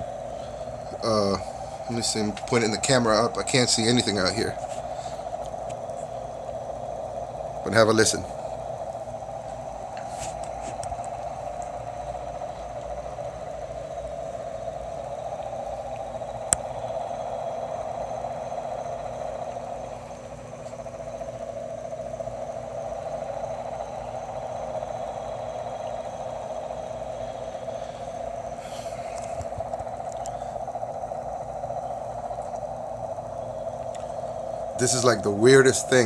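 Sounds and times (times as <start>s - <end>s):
droning hum: 0.0s - 36.0s.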